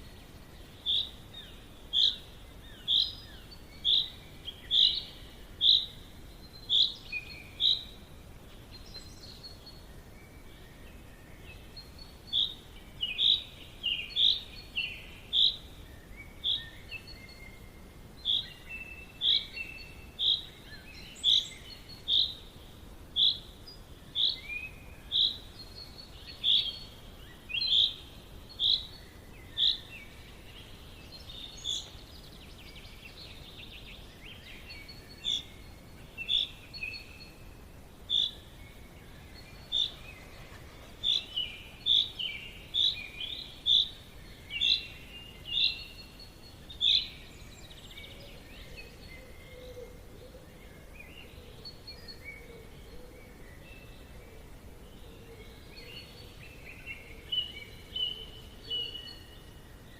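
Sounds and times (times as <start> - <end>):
faint background hiss: 0.0 - 59.9
soft bird chirps: 0.0 - 59.9.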